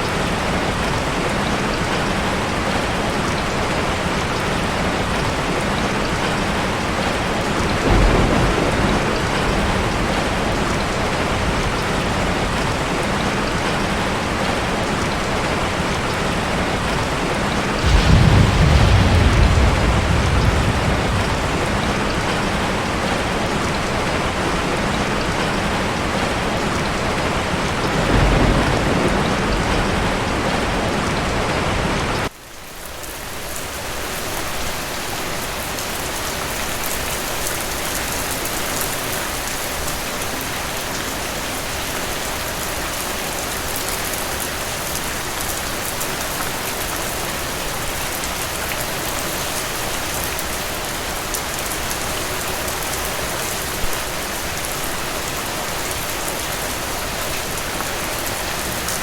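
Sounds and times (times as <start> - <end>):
heavy rain: 0.0 - 59.0
light hissy rain: 0.0 - 59.0.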